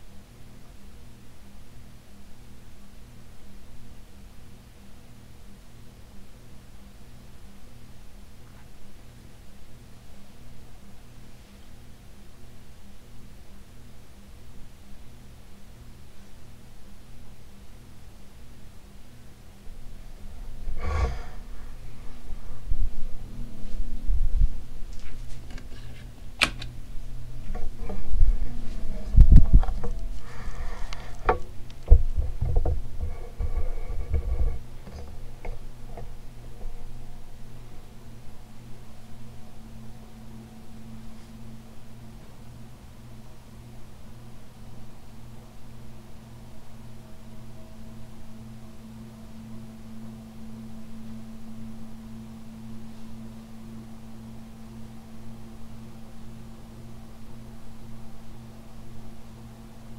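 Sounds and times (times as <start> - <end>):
ceiling fan humming: 0.0 - 59.9
hiss of moving air: 20.4 - 24.6, 28.2 - 31.4
low thumps: 27.0 - 30.3.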